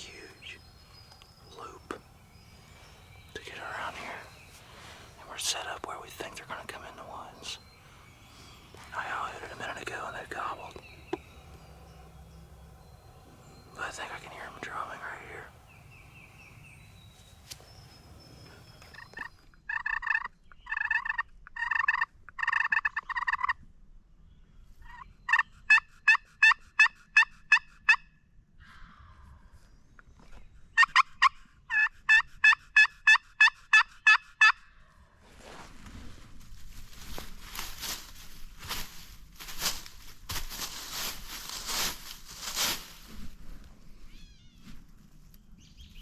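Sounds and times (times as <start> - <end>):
turkey yelps: 19.7 - 23.5, 30.8 - 34.6.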